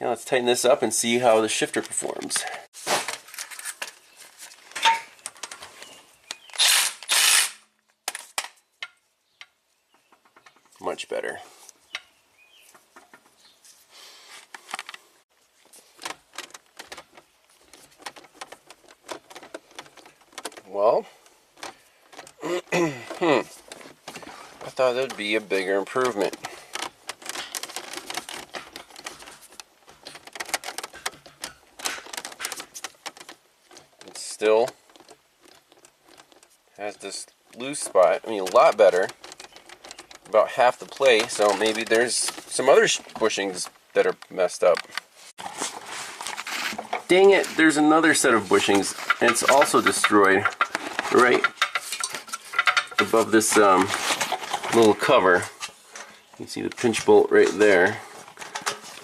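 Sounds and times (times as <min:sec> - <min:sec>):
gear shifter clicks and rattles: 0:16.0 - 0:22.4, 0:23.0 - 0:36.6, 0:37.3 - 0:45.1, 0:47.0 - 0:55.7.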